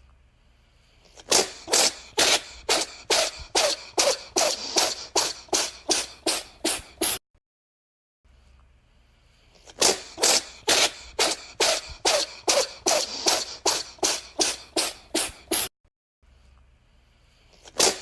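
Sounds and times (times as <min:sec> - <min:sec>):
cat sneezing: 0:01.1 - 0:07.2, 0:09.6 - 0:15.7, 0:17.6 - 0:18.0.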